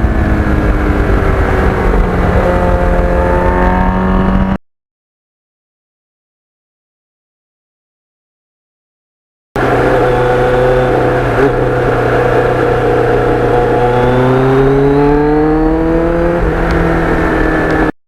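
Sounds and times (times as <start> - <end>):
motorcycle engine running: 0.0 - 4.6, 9.6 - 17.9.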